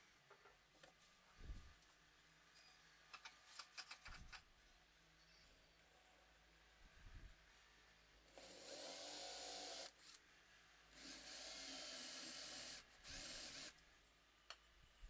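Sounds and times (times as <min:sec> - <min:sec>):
handheld power tool hissing: 0:11.0 - 0:13.8.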